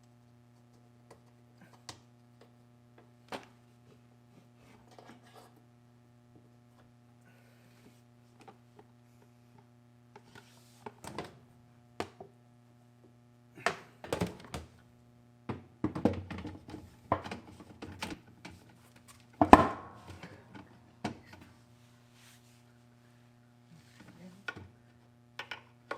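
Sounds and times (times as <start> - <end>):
low electrical hum: 0.0 - 25.9
tools and parts clicking and knocking: 25.4 - 25.9.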